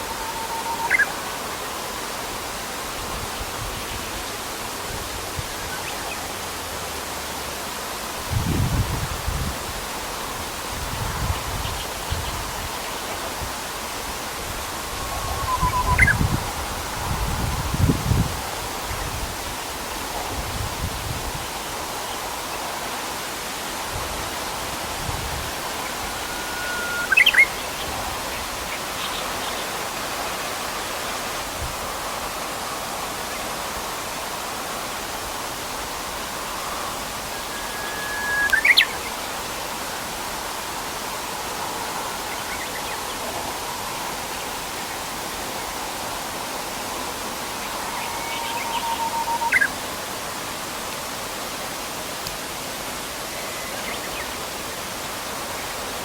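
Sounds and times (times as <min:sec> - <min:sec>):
river water rushing: 0:00.0 - 0:56.0
bird singing whistled song: 0:00.4 - 0:01.2, 0:15.1 - 0:16.4, 0:25.8 - 0:27.8, 0:37.3 - 0:39.1, 0:47.6 - 0:49.8.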